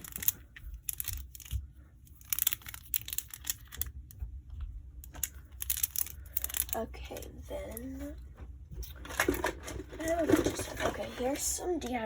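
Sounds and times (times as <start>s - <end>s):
plastic fidget chain clicking: 0.0s - 3.9s, 5.0s - 6.8s.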